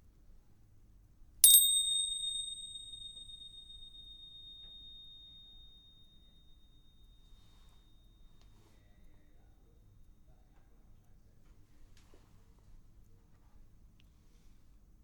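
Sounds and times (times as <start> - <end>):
high-pitched bell ringing: 1.4 - 8.2.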